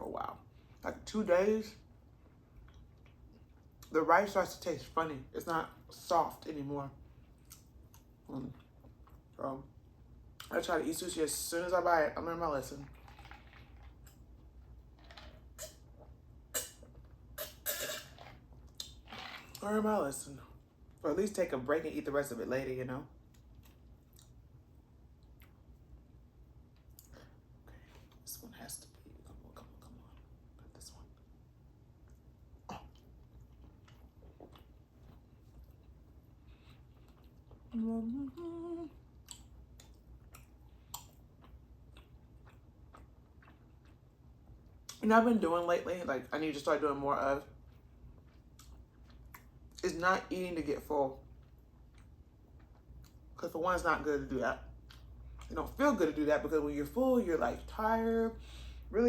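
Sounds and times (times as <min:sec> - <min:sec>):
chewing: 0:02.1 - 0:03.9, 0:07.1 - 0:09.4, 0:12.8 - 0:19.6, 0:23.2 - 0:24.5, 0:32.0 - 0:45.0, 0:47.6 - 0:49.9, 0:51.1 - 0:53.4, 0:54.8 - 0:55.5
woman humming: 0:37.7 - 0:39.0.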